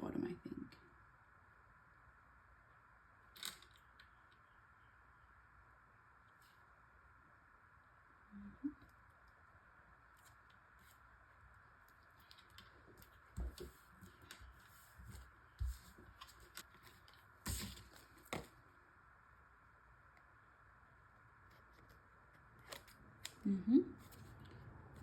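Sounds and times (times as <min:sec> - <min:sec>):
paper rustling and tapping: 0:12.2 - 0:18.6.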